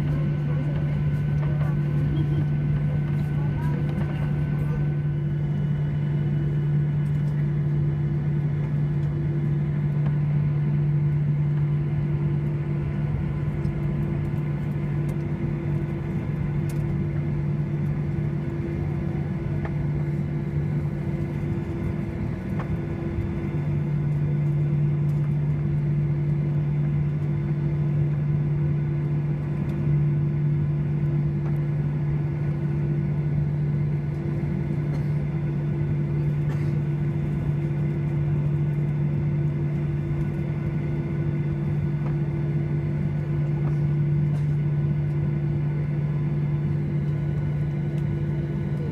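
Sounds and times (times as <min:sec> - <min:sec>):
airplane cabin drone: 0:00.0 - 0:48.9.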